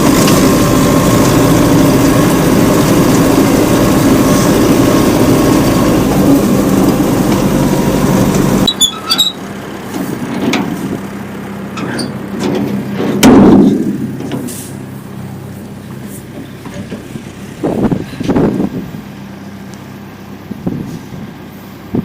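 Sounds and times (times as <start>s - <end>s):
vehicle engine running: 0.0s - 22.0s
loud clunk: 11.8s - 14.8s.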